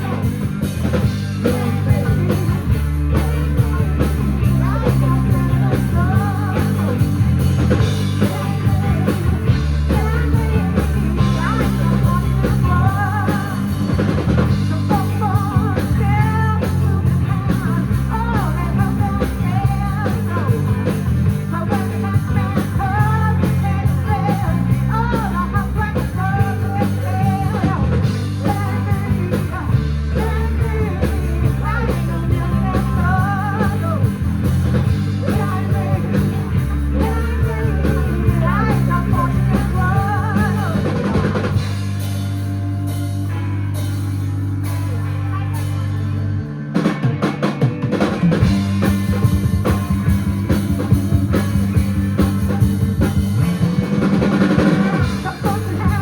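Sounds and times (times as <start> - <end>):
person singing: 0.0 - 42.0, 50.5 - 56.0
live rock band playing: 0.0 - 56.0.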